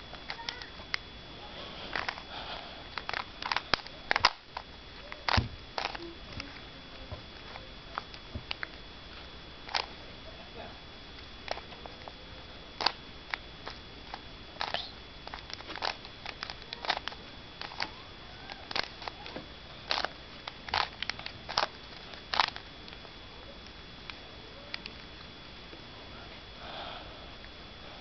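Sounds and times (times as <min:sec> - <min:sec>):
plastic puzzle cube clicking: 0:14.6 - 0:17.9, 0:19.9 - 0:20.1, 0:20.7 - 0:22.6.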